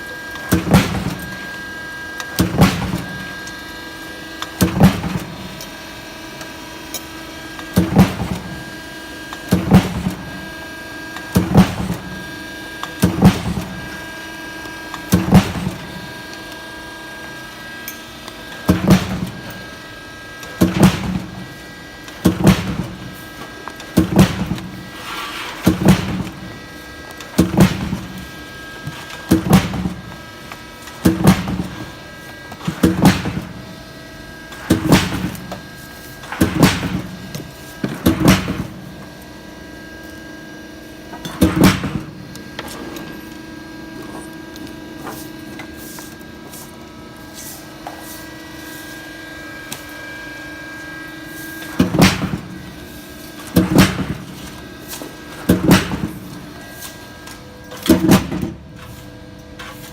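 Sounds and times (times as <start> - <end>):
steady machine hum: 0.0 - 59.9
machine clunking: 53.4 - 54.5.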